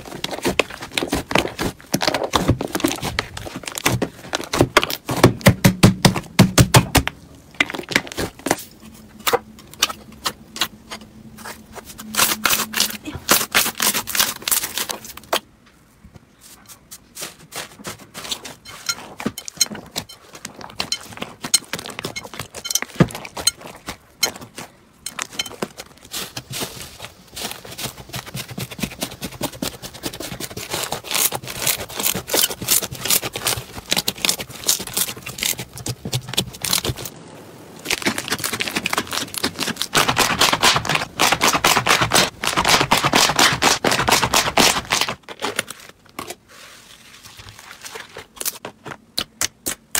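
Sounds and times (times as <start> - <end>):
slime crackling and popping: 37.8 - 45.8.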